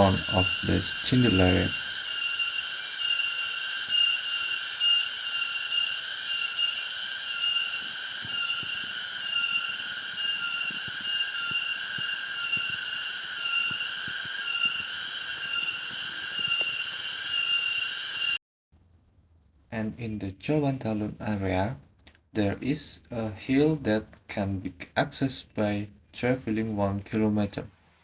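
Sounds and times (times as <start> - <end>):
cicadas buzzing: 0.0 - 18.4.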